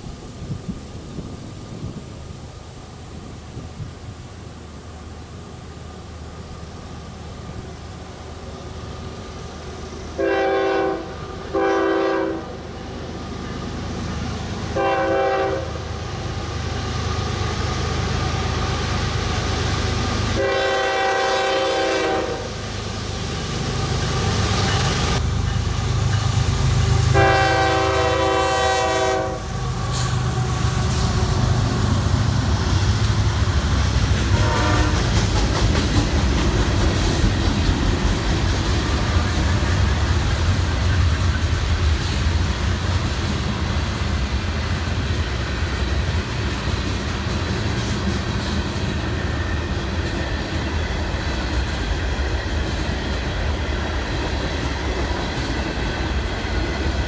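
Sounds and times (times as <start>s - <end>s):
diesel locomotive rumble: 0.0s - 57.0s
train air horn blasts: 10.2s - 12.7s, 14.8s - 15.9s, 20.4s - 22.6s, 25.5s - 31.9s, 34.2s - 35.2s.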